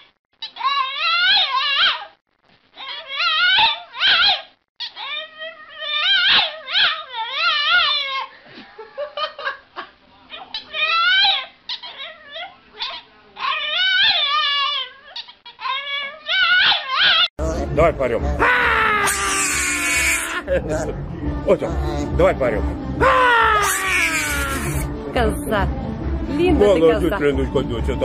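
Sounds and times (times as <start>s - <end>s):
dog whining and yowling: 0.4s - 2.2s, 2.8s - 8.3s, 10.4s - 17.3s.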